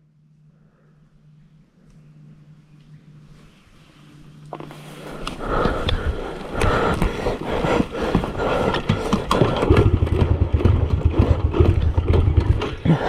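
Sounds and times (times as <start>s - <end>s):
motorcycle engine cranking: 8.7s - 12.9s.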